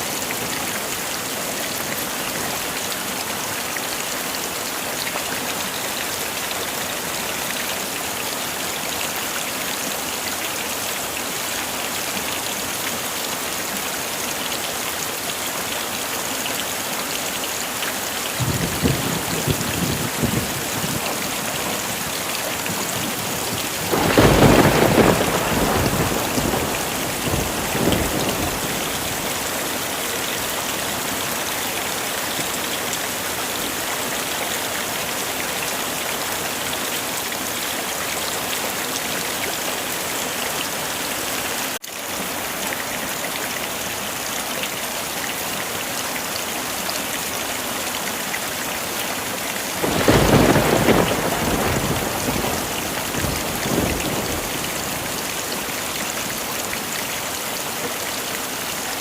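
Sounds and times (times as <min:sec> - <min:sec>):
heavy rain falling: 0:00.0 - 0:59.0
thunder rumbling: 0:18.4 - 0:29.4, 0:49.8 - 0:55.2.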